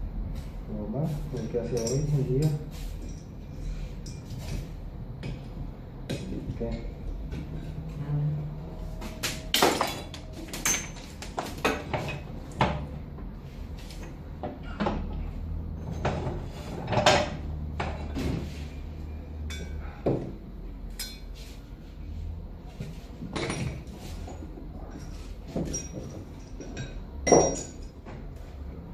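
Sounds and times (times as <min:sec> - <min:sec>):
metal tools clanking: 0:01.3 - 0:05.5, 0:09.0 - 0:12.6, 0:23.3 - 0:28.1.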